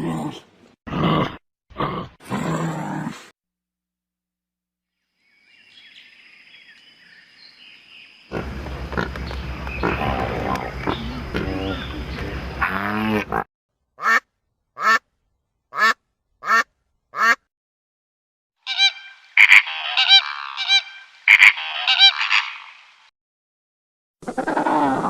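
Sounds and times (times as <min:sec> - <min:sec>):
flock honking: 0:18.6 - 0:22.8
bird honks: 0:18.6 - 0:23.0.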